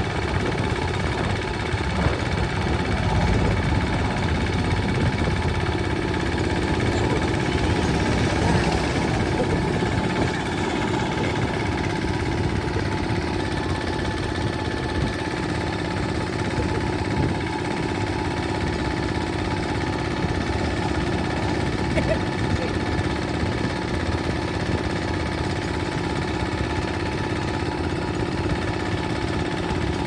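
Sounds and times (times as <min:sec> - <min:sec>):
diesel engine rumbling: 0:00.0 - 0:30.0.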